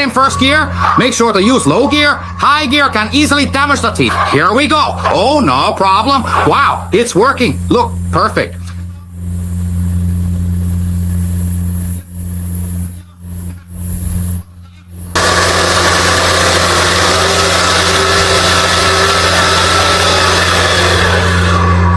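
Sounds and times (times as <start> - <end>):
loud steady hiss: 4.7 - 21.7
toy truck motor hum: 15.1 - 21.9.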